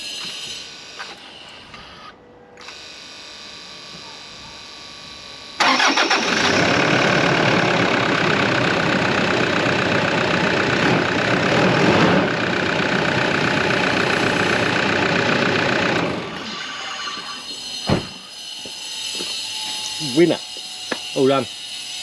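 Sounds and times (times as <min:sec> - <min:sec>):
diesel engine cranking and idling: 0:05.6 - 0:16.4.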